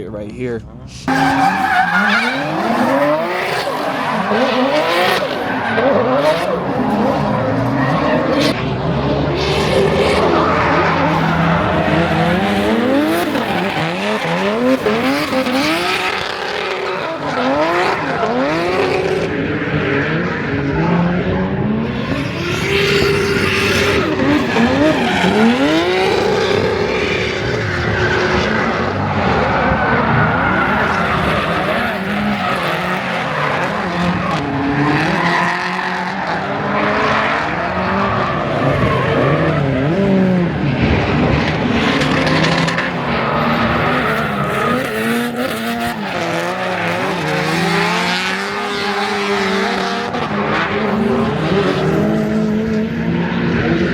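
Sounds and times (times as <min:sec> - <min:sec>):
car engines revving: 0:00.0 - 0:53.9
tyres squealing: 0:01.0 - 0:08.5.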